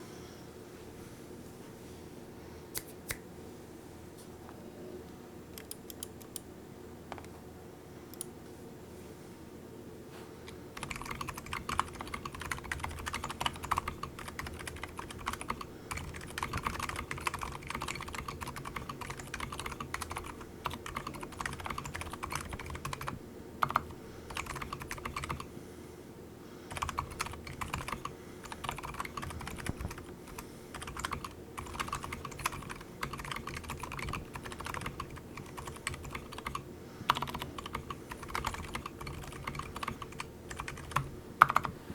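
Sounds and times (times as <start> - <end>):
mechanical keyboard typing: 10.8 - 25.5, 26.7 - 41.8.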